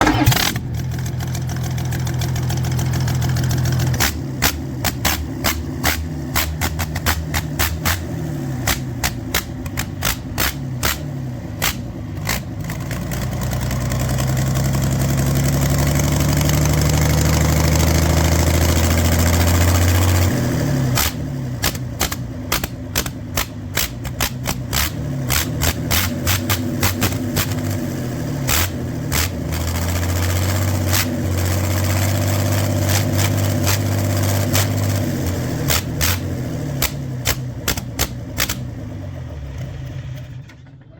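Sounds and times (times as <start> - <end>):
sharp engine clicks: 0.0 - 1.7, 3.7 - 13.3, 21.0 - 27.8, 28.5 - 38.7
diesel engine revving: 0.0 - 40.9.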